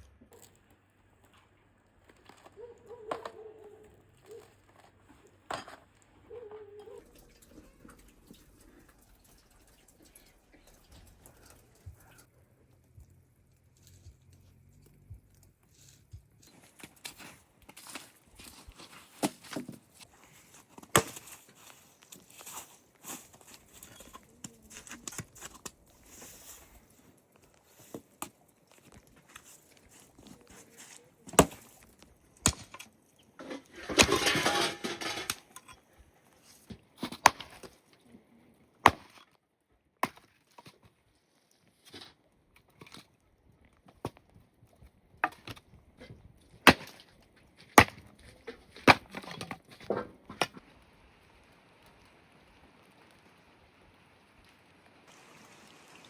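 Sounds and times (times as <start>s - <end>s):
rustling: 4.1s - 35.7s
wood breaking: 31.2s - 35.7s.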